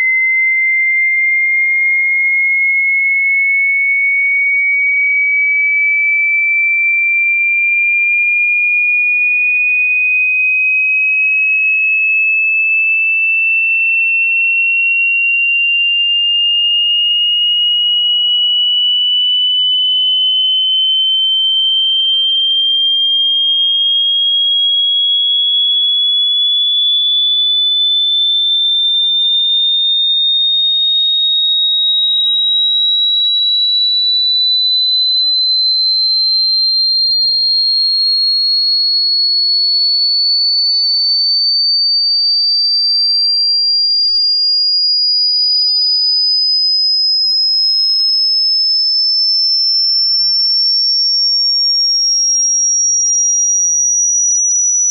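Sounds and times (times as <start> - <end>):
rising sine tone: 17.4 - 23.8, 32.0 - 45.5.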